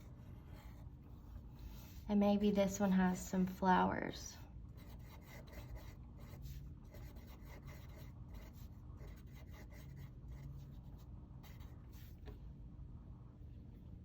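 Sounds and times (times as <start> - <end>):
marker scratching on paper: 4.8 - 12.1.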